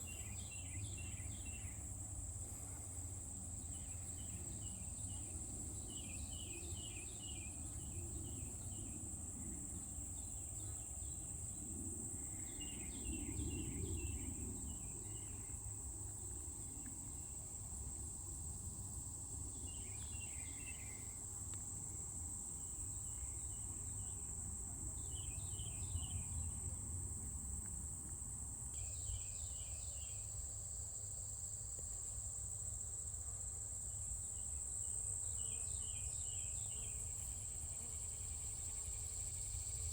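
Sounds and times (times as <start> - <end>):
insect pulsed chirping: 34.9 - 39.9.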